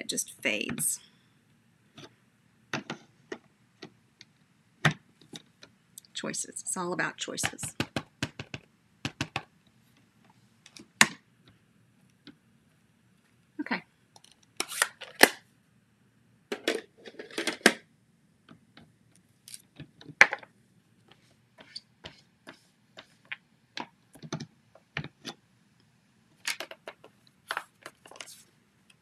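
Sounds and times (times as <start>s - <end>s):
paper rustling: 27.4s - 28.5s.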